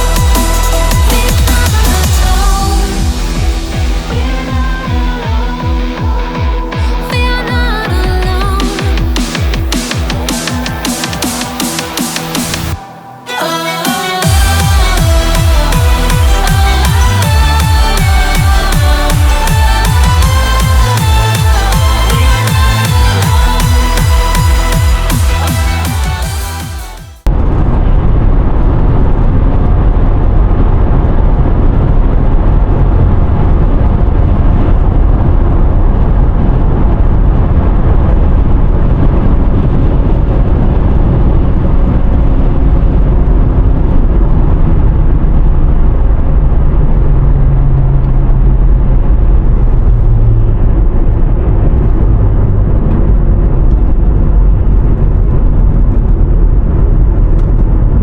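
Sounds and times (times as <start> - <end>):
low engine hum: 14.2 - 26.6, 27.2 - 58.0.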